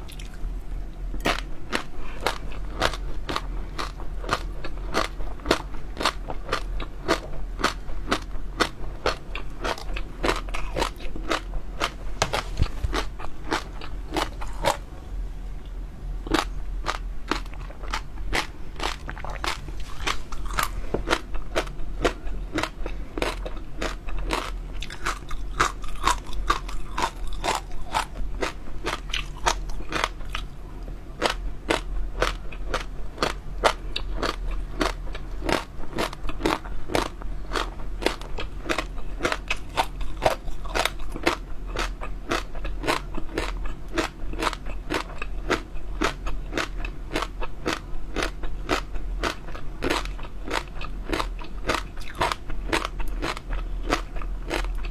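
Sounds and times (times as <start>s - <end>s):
crunchy chewing: 0.0s - 14.9s, 16.2s - 30.6s, 31.2s - 54.9s.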